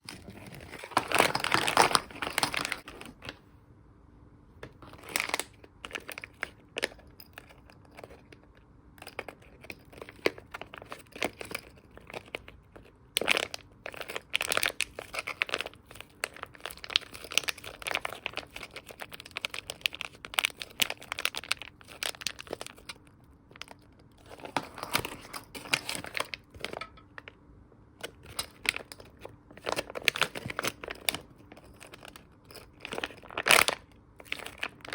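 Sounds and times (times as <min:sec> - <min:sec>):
plastic packaging crinkling: 0:00.0 - 0:03.4, 0:04.8 - 0:08.2, 0:09.0 - 0:27.3, 0:28.0 - 0:34.9
faint steady hum: 0:00.0 - 0:34.9.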